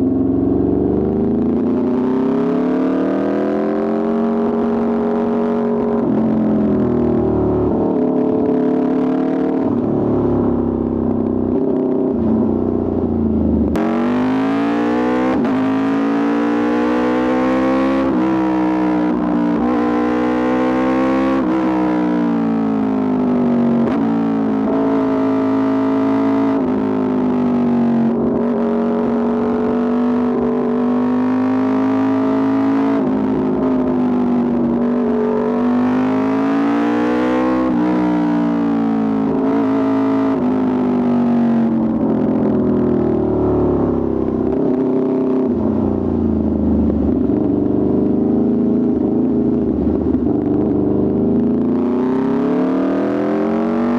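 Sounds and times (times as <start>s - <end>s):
motorcycle engine at high revs: 0.0s - 53.9s
motorcycle engine running: 6.1s - 14.4s, 41.8s - 53.9s.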